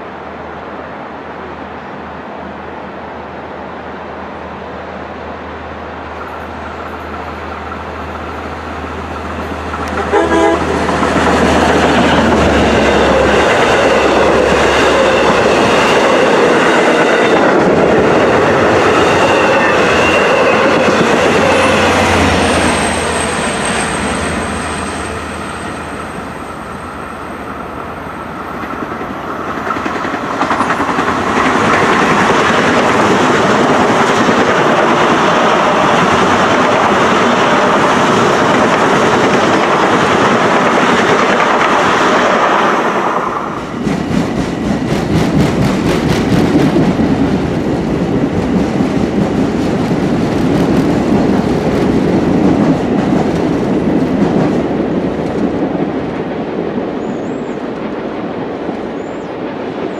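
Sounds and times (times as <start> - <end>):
train wheels clattering over rail joints: 7.0 - 25.0, 28.4 - 55.6
train horn blast: 9.8 - 11.0.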